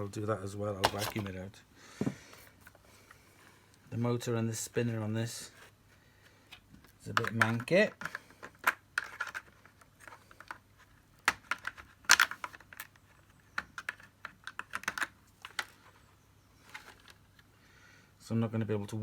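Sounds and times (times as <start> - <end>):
plastic vacuum parts clicking: 0.8 - 1.3, 6.5 - 15.8.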